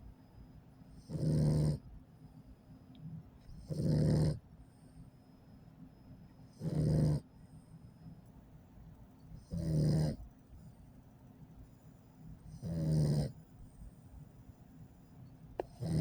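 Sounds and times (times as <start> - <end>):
puppy snoring: 0.9 - 1.9, 3.4 - 4.4, 6.5 - 7.3, 9.3 - 10.3, 12.4 - 13.9, 15.6 - 16.0.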